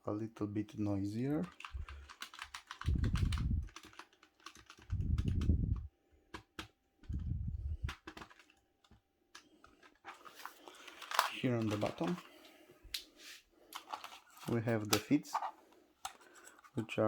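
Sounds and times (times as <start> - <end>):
keyboard keys clicking: 1.4 - 7.2
low rumble: 7.1 - 8.0.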